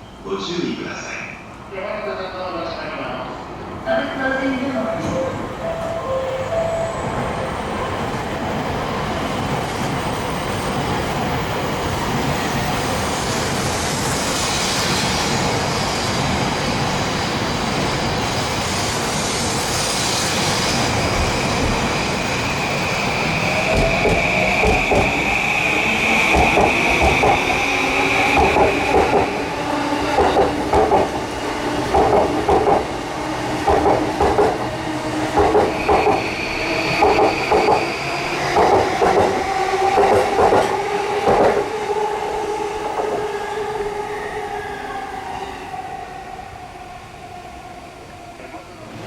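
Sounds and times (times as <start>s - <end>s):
high steady squeal: 17.8s - 30.5s, 35.5s - 40.4s
train wheels clattering on rails: 19.0s - 33.0s, 33.6s - 41.7s.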